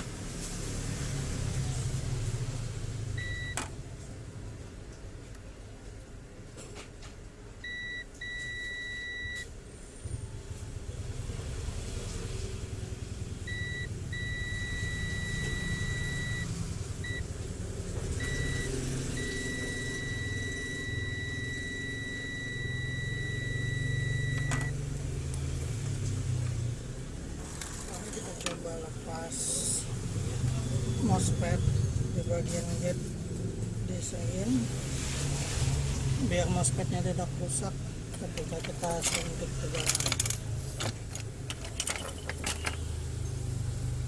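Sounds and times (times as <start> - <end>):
multimeter continuity beep: 3.2 - 3.6, 7.6 - 9.5, 13.5 - 17.3, 18.2 - 24.8.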